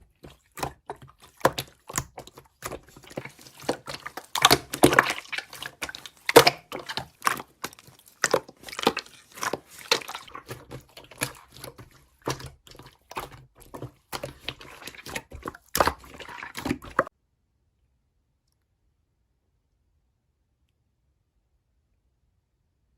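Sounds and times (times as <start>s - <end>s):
slime squishing with wet clicks: 0.0s - 17.1s.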